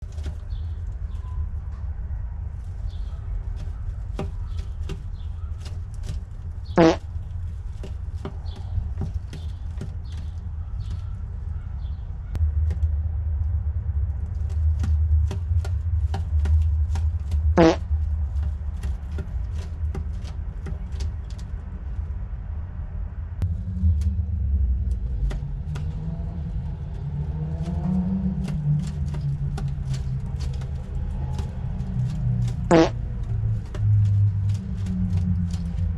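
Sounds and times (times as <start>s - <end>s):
steady low rumble: 0.0s - 35.9s
light taps and rustles: 2.6s - 12.0s, 14.4s - 22.2s, 25.2s - 35.9s.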